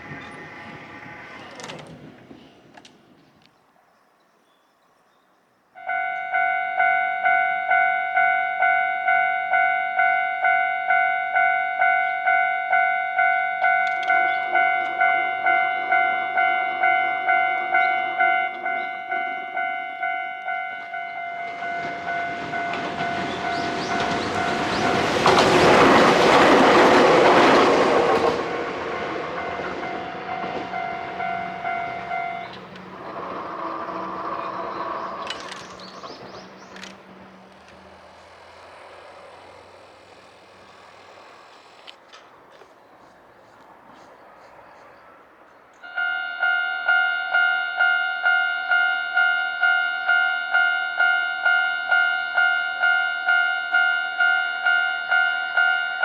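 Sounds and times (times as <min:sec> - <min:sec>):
train passing: 0:00.0 - 0:03.9, 0:05.7 - 0:56.0
level crossing warning bell: 0:05.8 - 0:42.3, 0:45.8 - 0:56.0.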